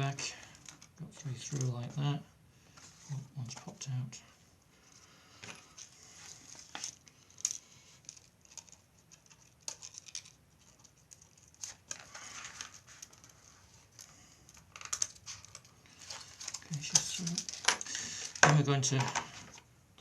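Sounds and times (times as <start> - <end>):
mylar film scraping and crinkling: 4.8 - 19.6.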